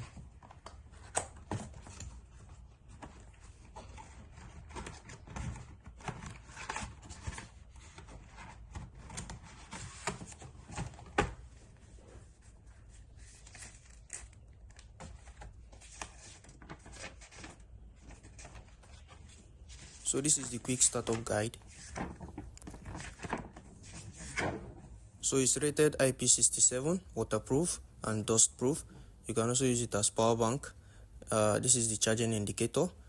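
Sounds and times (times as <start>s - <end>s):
packaging and paper rustling: 12.2s - 24.8s.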